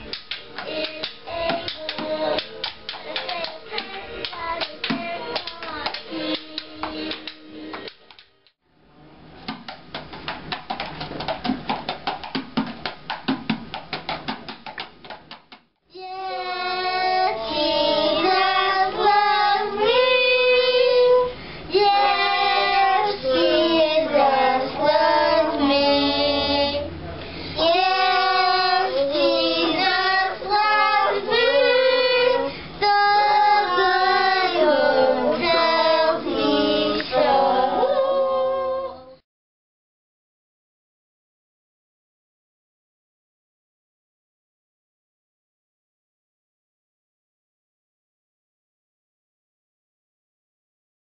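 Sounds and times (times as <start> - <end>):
children singing together: 0.0 - 7.6, 16.0 - 26.9, 27.6 - 39.2.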